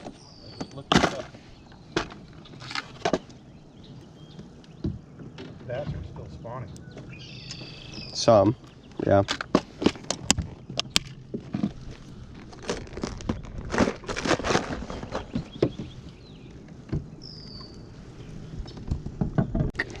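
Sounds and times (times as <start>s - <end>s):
knocks taps and rustling: 4.0s - 13.9s, 18.6s - 19.8s.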